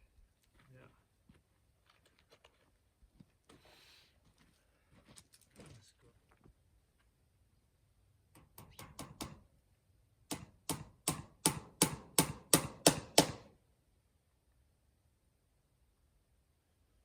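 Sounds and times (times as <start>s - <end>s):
hammer tapping nail lightly: 8.4s - 9.4s, 10.3s - 13.5s
hammer blows on nail: 10.3s - 13.5s.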